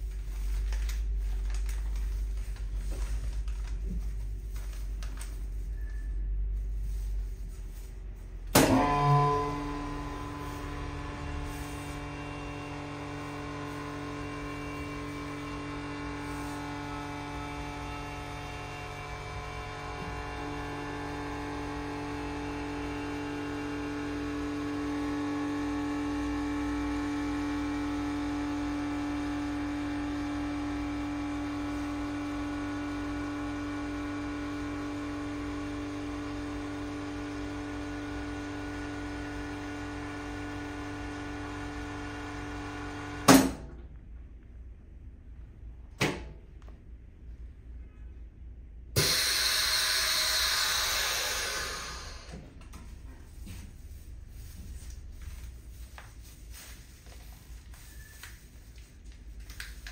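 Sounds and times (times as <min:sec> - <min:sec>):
vacuum pump humming: 0:08.5 - 0:43.3, 0:49.0 - 0:52.6.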